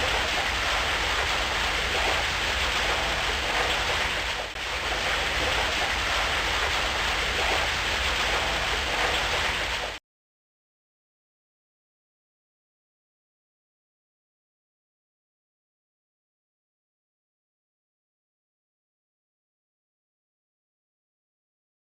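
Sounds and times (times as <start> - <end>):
rain falling: 0.0 - 10.0.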